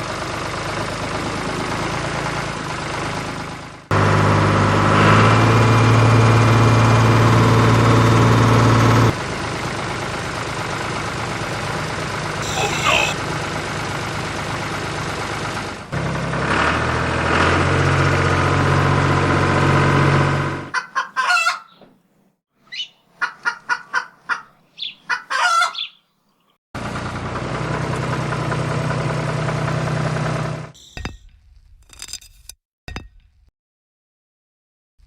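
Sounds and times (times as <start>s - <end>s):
engine-like drone: 0.0s - 20.7s, 26.8s - 30.8s
chicken clucking: 20.7s - 21.9s, 22.7s - 26.0s.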